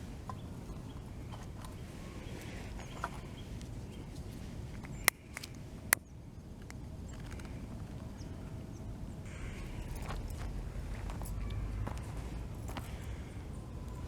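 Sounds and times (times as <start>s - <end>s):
low outdoor rumble: 0.0s - 14.0s.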